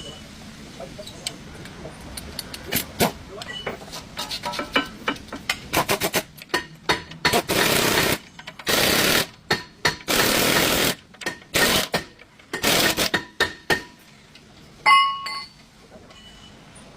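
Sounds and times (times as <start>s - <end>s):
impact wrench bursts: 7.0s - 13.9s.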